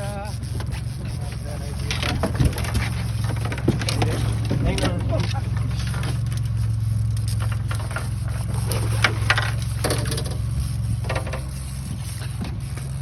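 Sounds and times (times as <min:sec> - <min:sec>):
boat engine idling: 0:00.0 - 0:13.0
knocks and rattles: 0:01.8 - 0:06.1.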